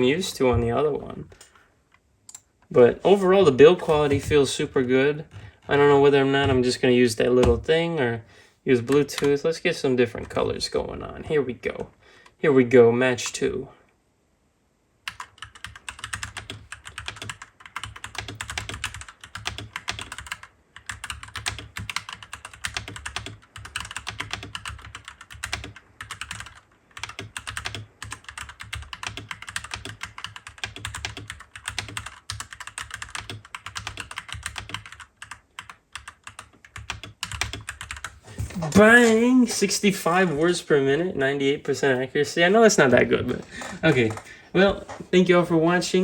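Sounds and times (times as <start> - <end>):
fast keyboard typing: 15.1 - 38.2.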